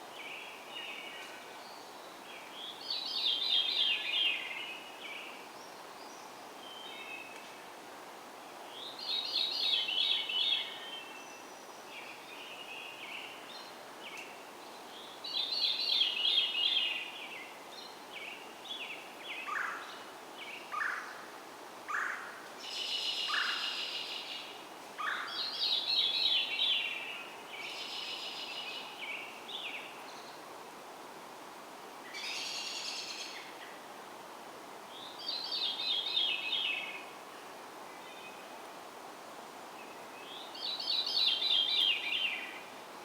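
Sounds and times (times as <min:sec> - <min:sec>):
background hiss: 0:00.0 - 0:43.0
songbirds singing: 0:34.9 - 0:38.6, 0:39.8 - 0:42.9.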